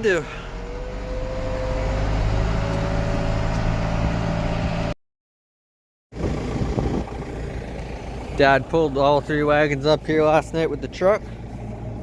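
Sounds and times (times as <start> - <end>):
tractor engine under load: 6.2 - 12.0.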